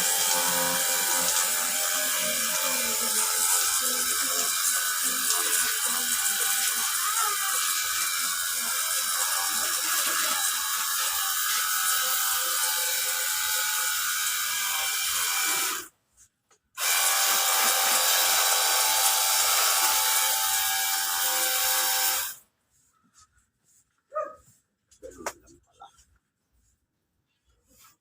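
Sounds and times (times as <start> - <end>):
pressure washer motor whirring: 0.0 - 15.9, 16.8 - 22.4.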